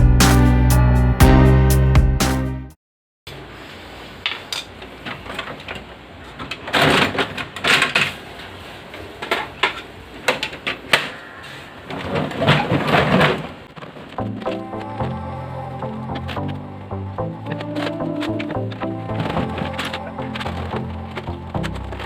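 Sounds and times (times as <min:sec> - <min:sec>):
background music: 0:00.0 - 0:02.8, 0:14.2 - 0:22.0.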